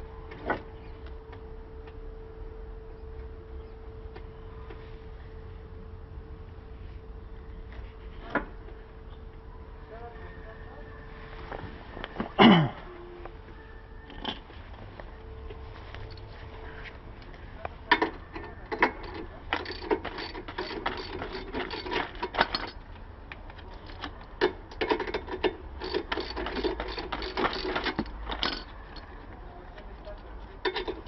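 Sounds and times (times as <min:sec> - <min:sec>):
ratchet wrench clicking: 0:18.8 - 0:22.8, 0:24.7 - 0:29.1.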